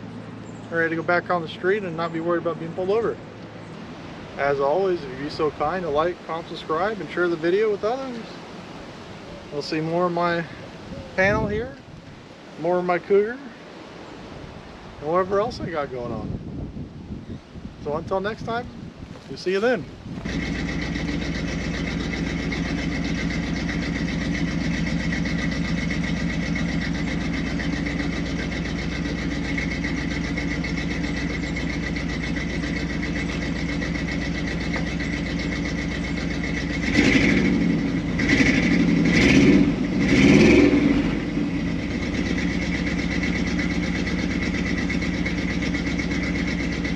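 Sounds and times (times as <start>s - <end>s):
engine throttle blips: 17.8s - 46.9s
truck engine idling: 19.3s - 46.9s.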